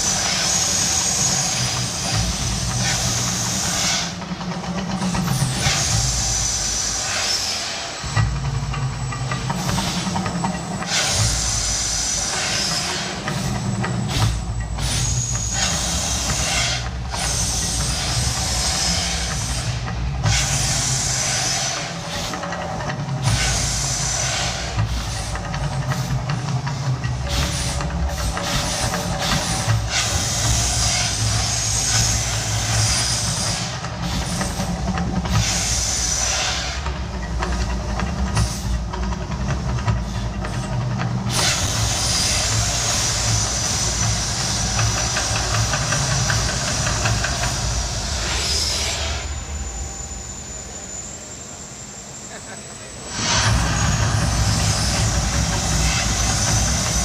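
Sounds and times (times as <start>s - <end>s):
fire jets hissing: 0.0s - 57.0s
low rumble: 53.0s - 57.0s.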